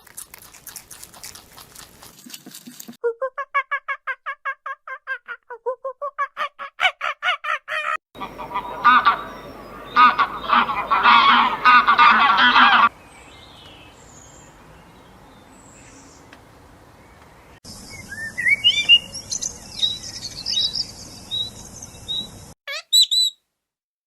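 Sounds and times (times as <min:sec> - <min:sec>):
chorus of overlapping animal calls: 0:08.2 - 0:12.9
faint outdoor noise: 0:08.2 - 0:23.8.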